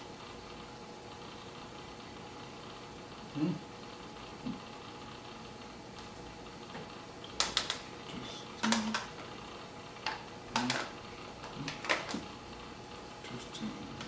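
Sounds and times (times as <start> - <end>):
faint background hum: 0.0 - 14.0
sharp clicks and knocks: 7.4 - 7.8, 10.0 - 12.3.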